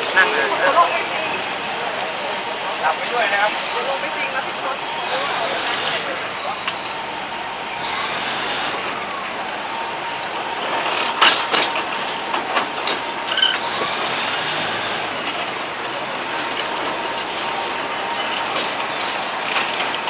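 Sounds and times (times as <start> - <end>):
train rumbling and rattling: 0.0 - 20.0
train wheel squeals: 3.3 - 4.4, 5.0 - 9.2, 10.0 - 20.0.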